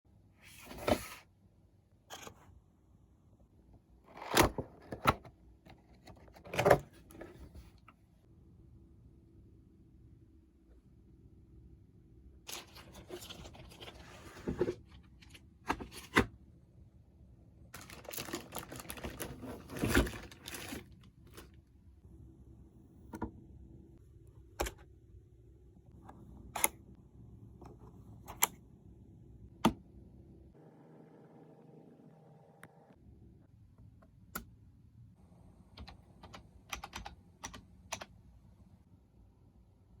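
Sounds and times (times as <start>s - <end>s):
packaging crinkling and rustling: 17.8s - 21.6s.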